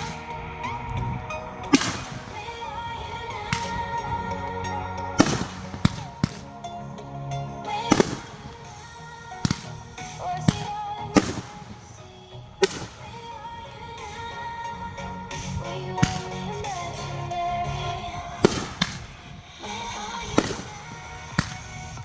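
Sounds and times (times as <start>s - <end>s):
background music: 0.0s - 22.0s
fireworks bangs with crackling: 1.7s - 2.5s, 5.2s - 6.5s, 18.4s - 22.0s.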